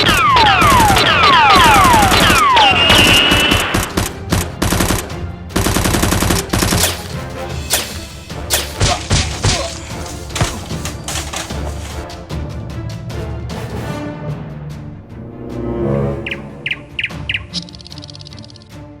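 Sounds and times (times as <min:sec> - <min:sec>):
rapid gunfire: 0:00.0 - 0:12.0
background music: 0:00.0 - 0:19.0.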